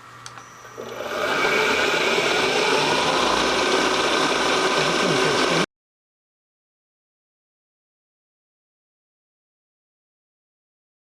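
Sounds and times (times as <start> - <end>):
milling machine cutting metal: 0.8 - 5.7.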